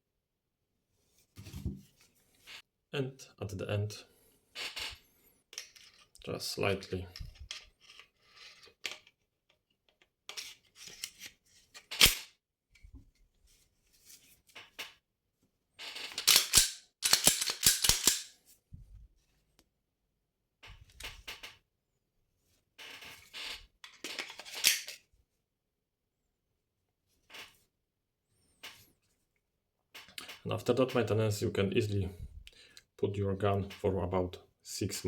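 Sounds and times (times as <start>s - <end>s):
pistol parts sliding and clicking: 12.0s - 12.3s, 16.1s - 18.4s, 23.8s - 25.0s
sharp metal snap: 16.3s - 18.3s.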